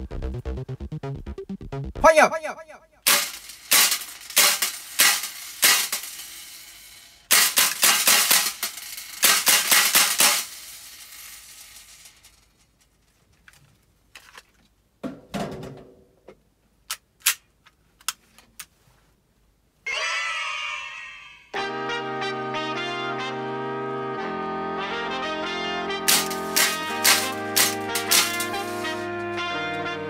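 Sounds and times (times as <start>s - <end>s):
airsoft pistol shots: 26.1s - 29.0s.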